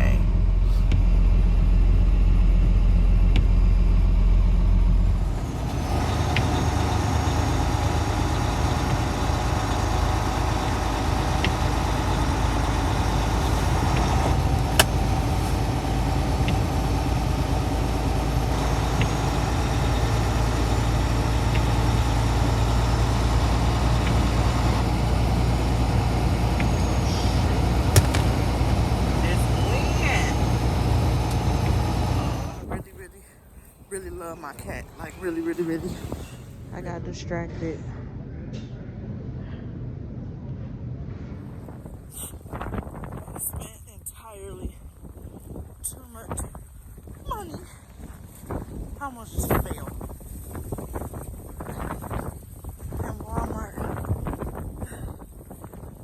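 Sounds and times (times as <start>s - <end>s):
vehicle engine droning: 0.0s - 36.8s
sharp click: 28.0s - 28.5s.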